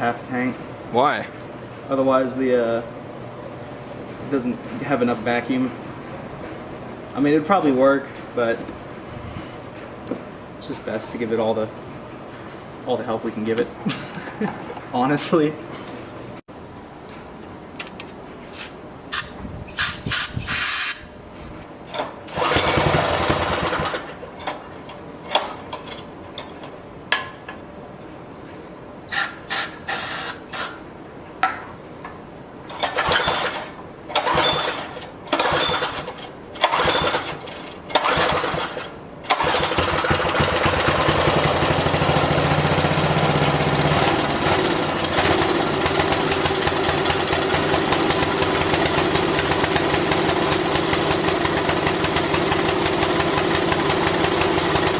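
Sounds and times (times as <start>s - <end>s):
recoil starter pulls: 21.9s - 24.6s, 32.7s - 54.9s
small engine running: 22.3s - 24.2s, 34.2s - 54.9s.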